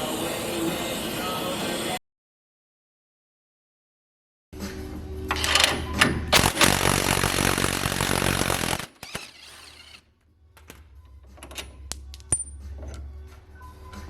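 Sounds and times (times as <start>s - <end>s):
power tool running: 6.3s - 10.1s.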